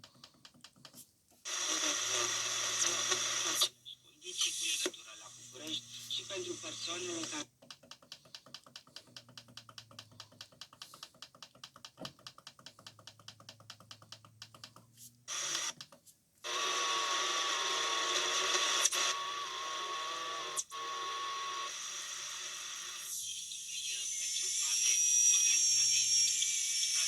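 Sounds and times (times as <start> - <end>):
shortwave static hiss: 1.5 - 7.5, 15.2 - 15.8, 16.4 - 27.0
rapid even ticking: 7.5 - 14.9.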